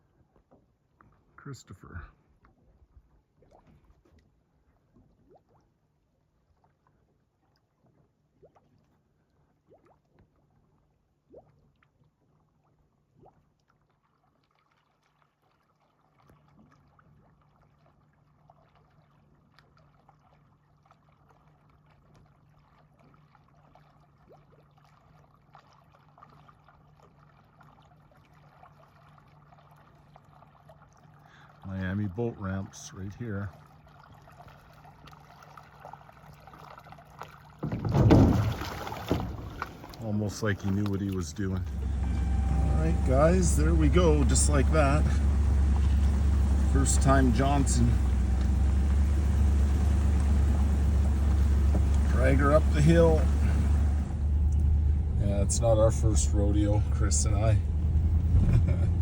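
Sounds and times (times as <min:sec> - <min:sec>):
faint boat motor hum: 0:15.8 - 0:59.0.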